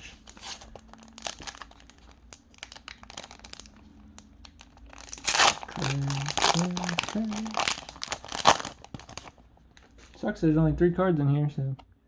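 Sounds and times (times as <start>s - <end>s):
foil wrapper crinkling: 0.0s - 10.0s
wrapper ripping: 0.3s - 9.9s.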